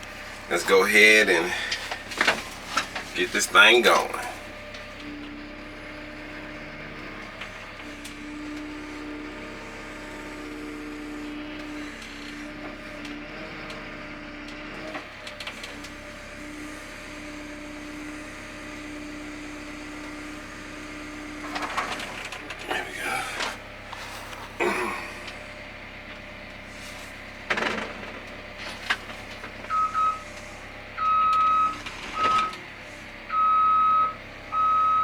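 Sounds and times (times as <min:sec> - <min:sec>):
diesel engine idling: 0:00.0 - 0:35.0.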